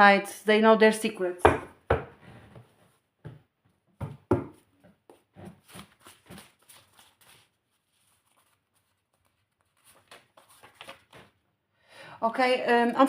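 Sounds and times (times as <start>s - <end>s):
cards tapping and rustling: 4.0s - 11.4s.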